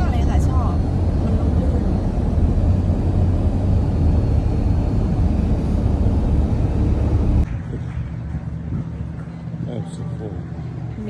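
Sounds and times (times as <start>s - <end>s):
loud low rumble: 0.0s - 8.3s.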